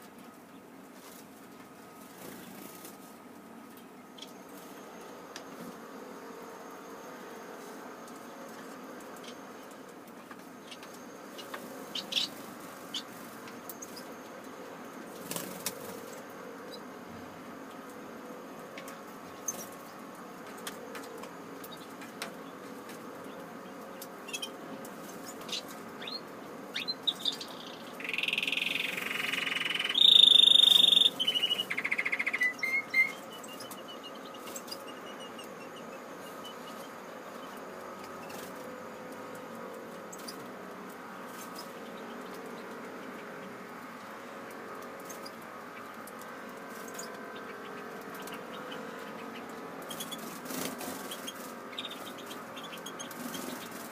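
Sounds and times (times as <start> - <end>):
birds chirping and singing: 9.2 - 14.3, 21.0 - 38.5, 46.7 - 53.9.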